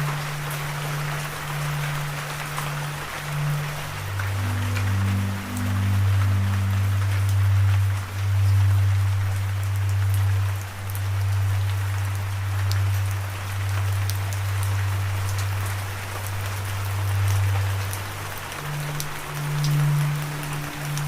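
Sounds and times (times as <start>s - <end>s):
low music drone: 0.0s - 21.0s
steady rain: 0.0s - 21.0s.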